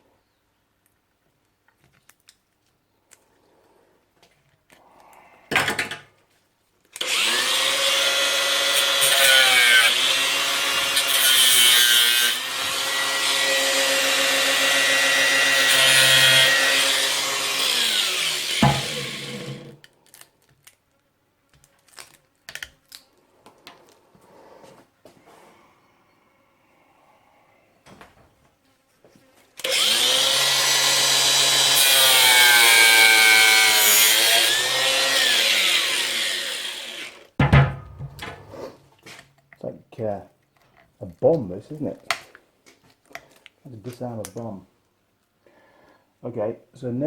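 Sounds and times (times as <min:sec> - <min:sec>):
power tool cutting battery: 0:07.0 - 0:19.8, 0:29.6 - 0:37.4.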